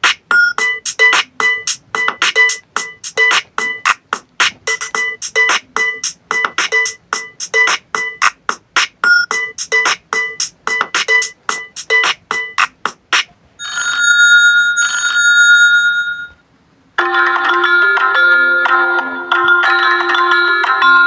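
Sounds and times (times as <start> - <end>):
ringtone tune: 0.3 - 4.0, 4.6 - 8.4, 9.0 - 12.7, 17.0 - 21.0.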